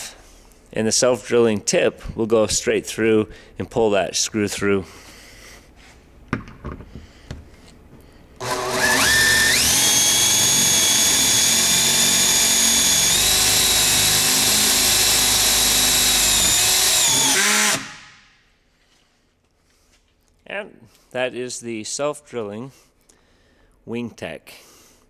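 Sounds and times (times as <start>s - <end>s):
power drill motor whine: 8.4s - 18.2s.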